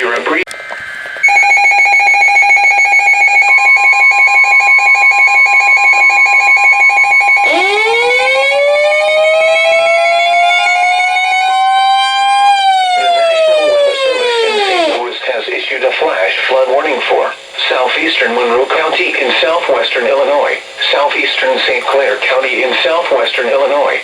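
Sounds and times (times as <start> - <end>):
siren winding: 0.5 - 15.0
rapidly pulsing electronic beep: 0.7 - 8.0.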